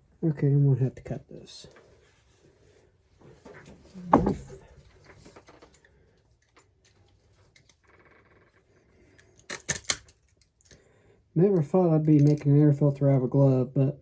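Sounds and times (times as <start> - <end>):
heavy thump: 4.0 - 4.7.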